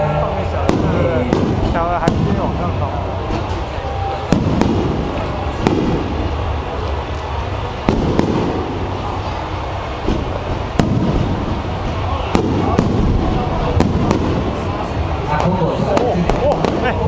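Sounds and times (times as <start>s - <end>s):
low rumble of fireworks display: 0.0s - 17.0s
fireworks shells bursting: 0.7s - 2.6s, 3.3s - 14.7s.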